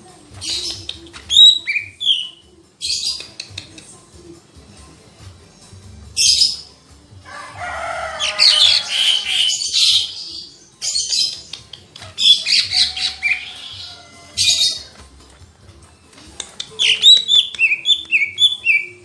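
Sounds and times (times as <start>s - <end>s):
bird singing chattering phrases: 0.4s - 3.7s, 8.3s - 15.0s, 16.5s - 19.0s.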